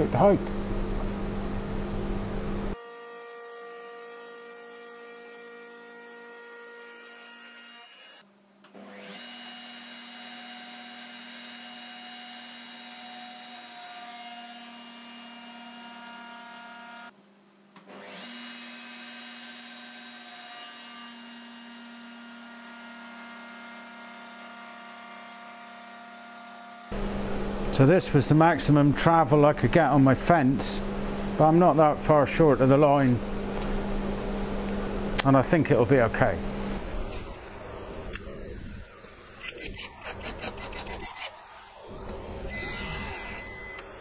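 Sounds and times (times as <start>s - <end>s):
router motor whine: 8.8s - 17.1s, 17.9s - 27.7s, 36.2s - 44.0s.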